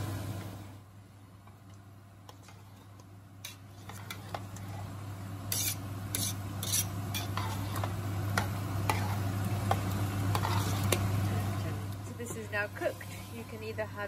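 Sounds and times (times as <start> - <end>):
steady low hum: 0.0 - 14.0
spoon stirring in pot: 1.5 - 11.3.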